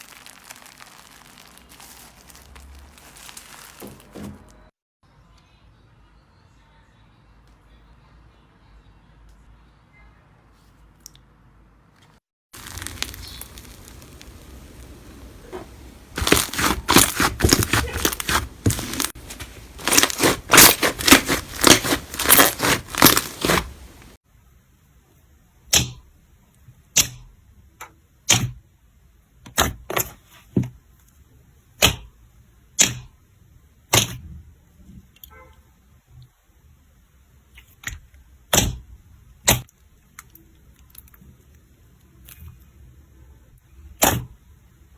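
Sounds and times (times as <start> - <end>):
slime crackling and popping: 0.0 - 4.2, 12.6 - 24.2.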